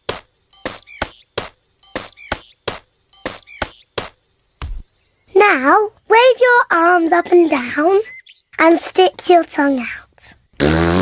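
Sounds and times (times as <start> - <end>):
sharp cartoon thumps: 0.0 - 4.9.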